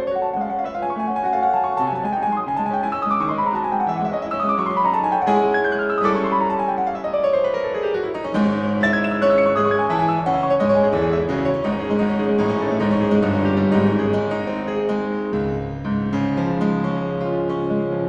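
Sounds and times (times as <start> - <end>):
piano music: 0.0 - 18.0.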